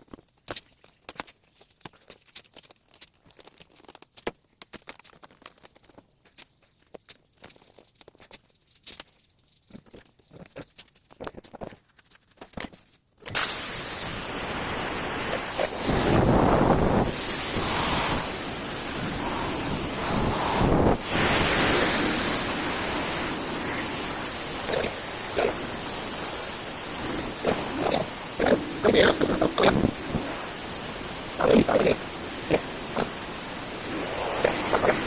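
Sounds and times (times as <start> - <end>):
electric cooling fan running: 13.4 - 35.0.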